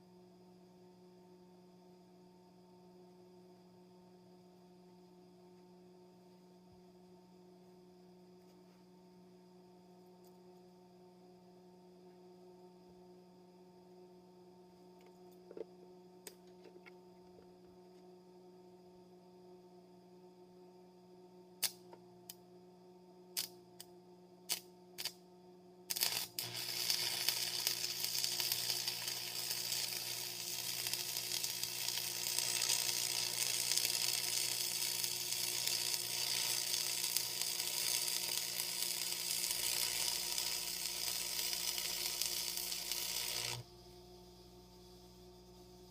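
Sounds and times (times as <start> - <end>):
welding arc crackling sizzle: 24.5 - 25.2, 25.9 - 43.7
electrode striking steel cracks: 25.9 - 43.6
welder humming at idle: 25.9 - 45.9.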